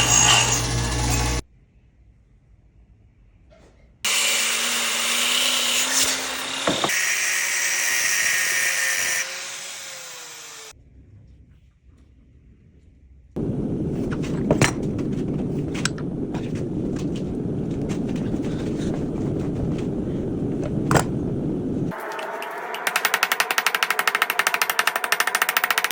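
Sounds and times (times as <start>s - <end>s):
grinder grinding steel: 0.0s - 1.4s, 4.1s - 10.7s
steady rushing noise: 13.4s - 24.1s.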